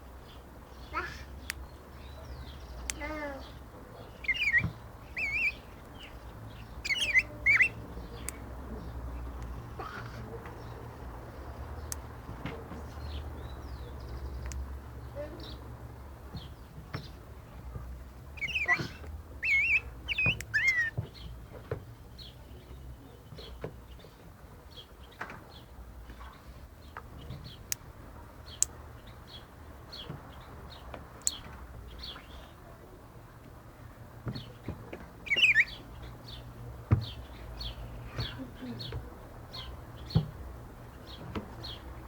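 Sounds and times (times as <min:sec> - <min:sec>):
bird song: 0:00.0 - 0:09.8, 0:10.4 - 0:27.8, 0:28.4 - 0:32.8, 0:34.2 - 0:42.0
bird chirping: 0:00.2 - 0:09.7, 0:18.3 - 0:21.4, 0:34.3 - 0:41.9.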